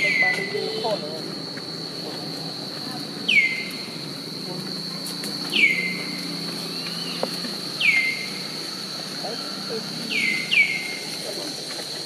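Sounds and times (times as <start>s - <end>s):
high-pitched insect drone: 0.0s - 12.0s
bird whistling call: 3.3s - 3.7s, 5.6s - 6.0s, 7.8s - 8.4s, 10.1s - 11.0s.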